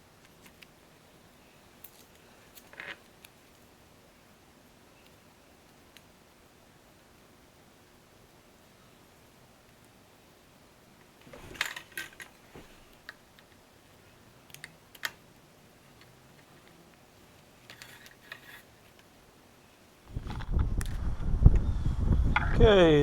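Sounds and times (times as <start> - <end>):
small objects clicking and clattering: 17.6 - 19.1.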